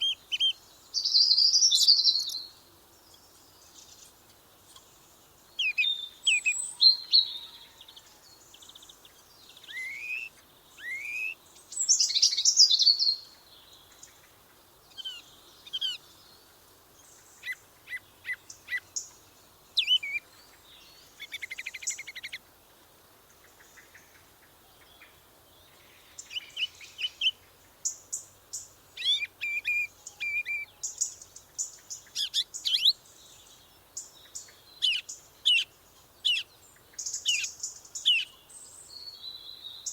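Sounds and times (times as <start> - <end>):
songbirds chirping and singing: 23.6 - 39.9.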